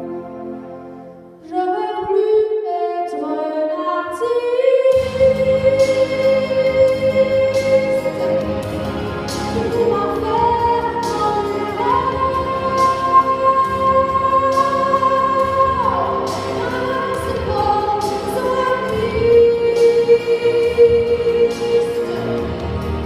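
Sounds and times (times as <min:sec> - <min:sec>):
instrumental accompaniment: 0:00.0 - 0:02.6, 0:04.9 - 0:23.0
woman singing a slow ballad: 0:01.5 - 0:08.5, 0:09.6 - 0:22.5.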